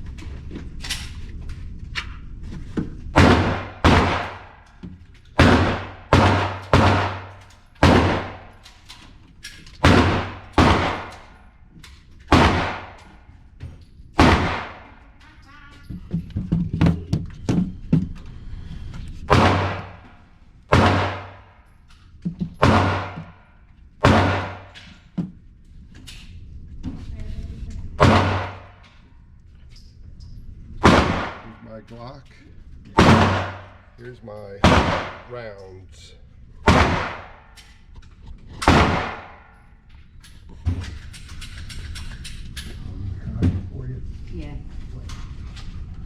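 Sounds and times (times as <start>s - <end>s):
pistol shots with echo: 3.2s - 4.6s, 5.4s - 8.6s, 9.8s - 11.4s, 12.3s - 13.2s, 14.2s - 15.0s, 19.3s - 20.0s, 20.7s - 21.6s, 22.6s - 23.4s, 24.0s - 24.8s, 28.0s - 28.8s, 30.8s - 31.6s, 33.0s - 34.0s, 34.6s - 35.3s, 36.6s - 37.6s, 38.6s - 39.6s.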